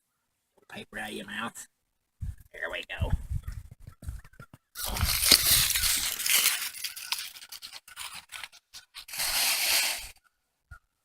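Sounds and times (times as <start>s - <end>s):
paper crinkling and tearing: 4.8s - 10.1s.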